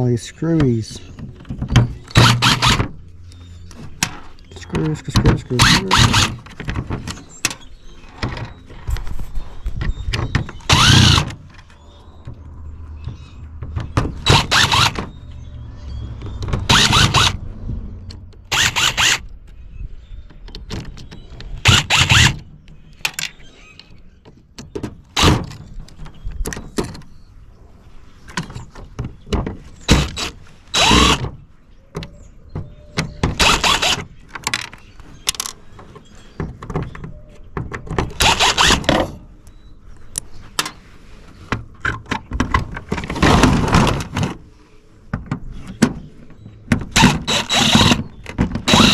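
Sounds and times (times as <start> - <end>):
tool on metal: 1.8 - 2.9, 4.6 - 6.5, 10.5 - 11.5, 14.2 - 15.2, 16.5 - 17.4, 18.5 - 19.3, 21.6 - 22.4, 29.8 - 31.3, 33.3 - 34.7, 38.0 - 39.2, 46.9 - 48.9.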